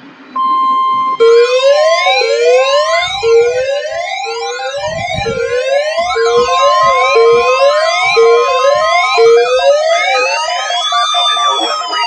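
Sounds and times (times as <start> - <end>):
rising siren-like wails: 0.0 - 12.0
steady alert tone: 0.3 - 12.0.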